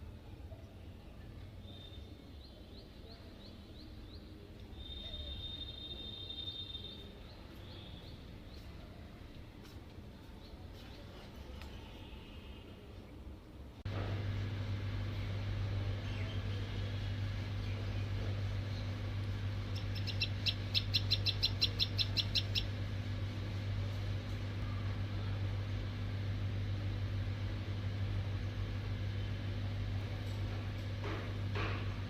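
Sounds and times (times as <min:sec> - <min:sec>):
steady low hum: 0:13.3 - 0:32.0.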